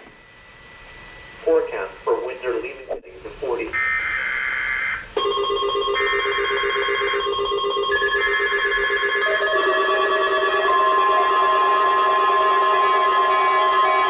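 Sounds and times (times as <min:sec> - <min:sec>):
steady electronic warning tone: 0:03.7 - 0:14.0.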